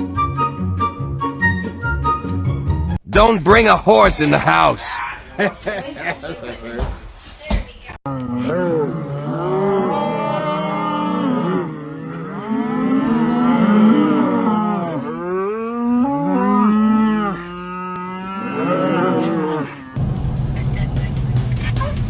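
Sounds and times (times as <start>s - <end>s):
cattle mooing: 8.1s - 20.0s.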